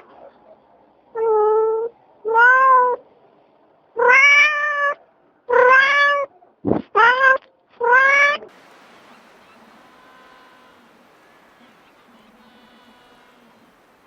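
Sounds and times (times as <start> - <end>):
cat meowing: 1.2 - 3.0, 4.0 - 6.3.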